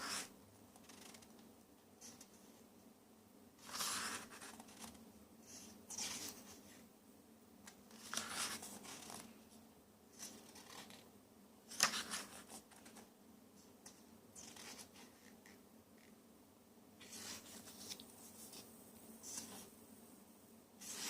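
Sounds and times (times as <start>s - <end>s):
paper pages rustling: 3.6s - 5.0s, 7.7s - 9.3s, 11.7s - 13.1s, 17.0s - 19.7s.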